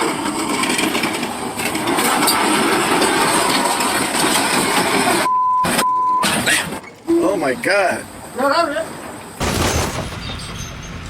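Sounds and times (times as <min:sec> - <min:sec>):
censor bleep tone: 0:05.3 - 0:06.3.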